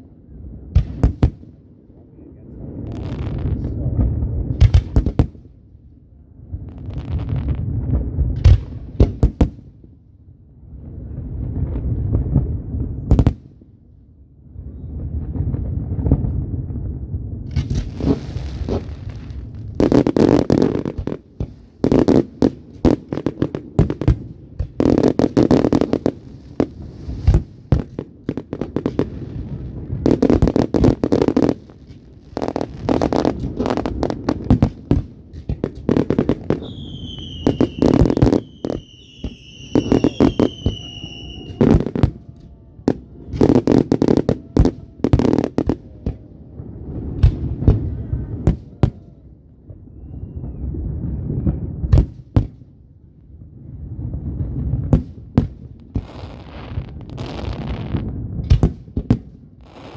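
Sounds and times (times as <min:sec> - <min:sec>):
fireworks bangs and crackling: 0:00.0 - 0:59.9
falling firework whistles: 0:35.9 - 0:45.7, 0:49.9 - 0:50.8.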